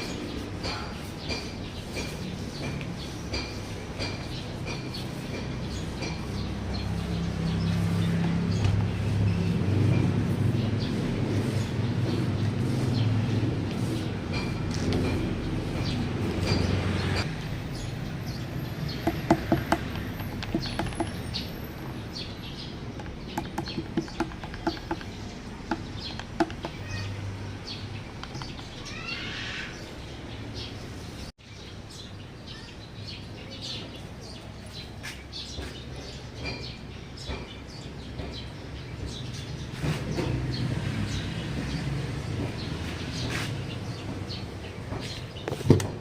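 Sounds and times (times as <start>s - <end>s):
bird chirps: 14.4s - 30.8s.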